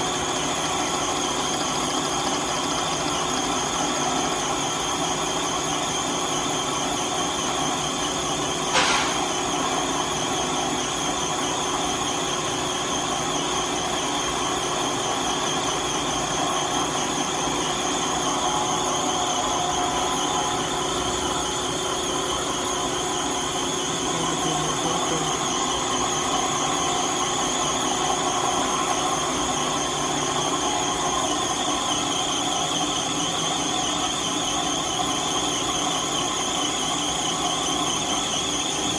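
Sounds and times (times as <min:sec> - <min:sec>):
lathe machine hum: 0:00.0 - 0:38.9
steady high tones: 0:08.7 - 0:10.0
sharp click: 0:08.8 - 0:09.5.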